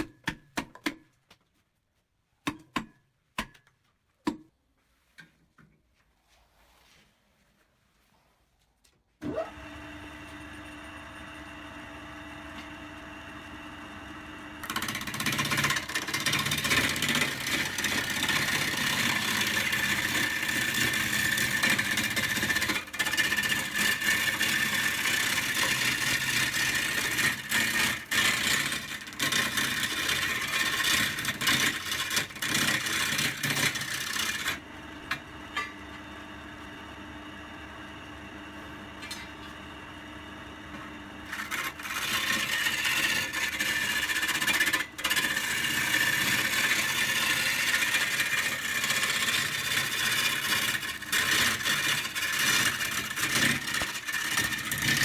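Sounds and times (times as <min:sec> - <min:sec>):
lathe motor humming: 0:09.4 - 0:35.2, 0:41.2 - 0:55.0
tool cutting spinning wood: 0:14.6 - 0:35.8, 0:41.2 - 0:55.0.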